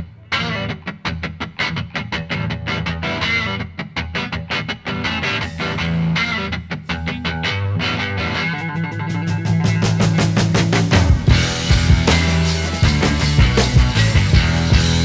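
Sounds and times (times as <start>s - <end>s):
plucked electric guitar: 0.0s - 15.0s
bass line: 8.5s - 15.0s.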